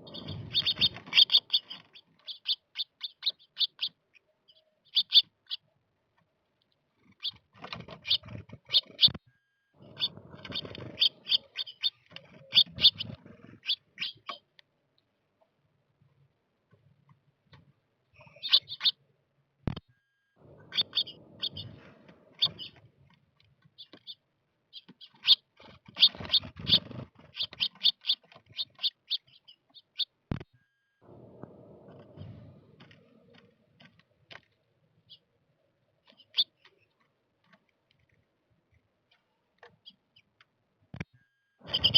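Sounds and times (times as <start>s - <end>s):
small birds chirping: 0.0s - 5.7s, 6.6s - 9.2s, 9.8s - 14.6s, 18.1s - 19.0s, 20.4s - 22.9s, 23.6s - 30.2s, 36.0s - 37.1s, 39.0s - 40.4s, 41.6s - 41.9s.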